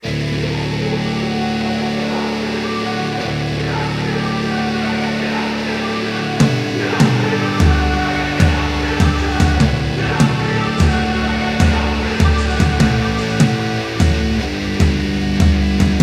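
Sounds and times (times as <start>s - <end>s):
rock guitar chords: 0.0s - 16.0s
drums with heavy beat: 6.4s - 16.0s.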